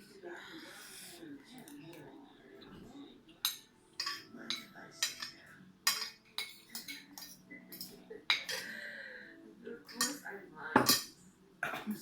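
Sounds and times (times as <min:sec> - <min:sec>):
cutlery clinking on a plate: 0:03.4 - 0:08.7, 0:09.9 - 0:11.2.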